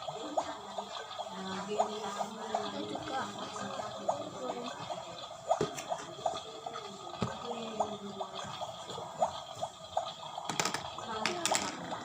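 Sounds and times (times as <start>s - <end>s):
water dripping and trickling: 0.0s - 12.0s.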